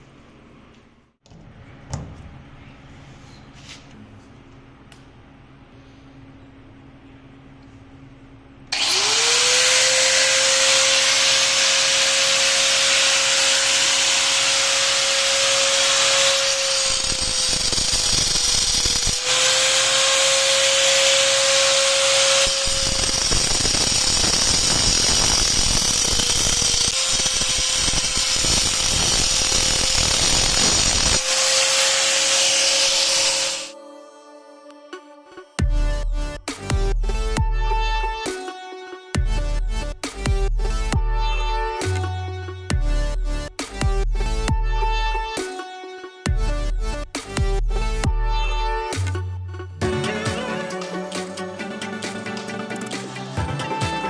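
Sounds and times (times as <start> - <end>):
electric motor whine: 8.7 - 33.8.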